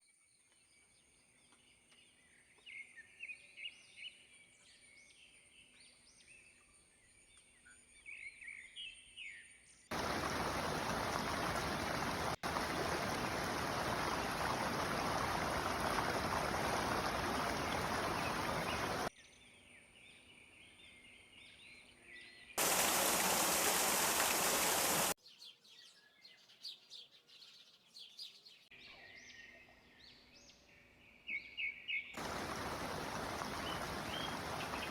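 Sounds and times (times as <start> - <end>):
birds chirping: 9.9 - 19.1, 22.6 - 25.2, 31.4 - 34.9.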